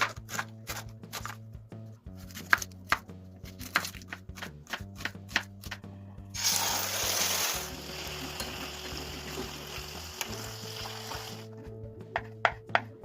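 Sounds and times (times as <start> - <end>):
background music: 0.0 - 13.0
food sizzling in hot oil: 6.4 - 11.5.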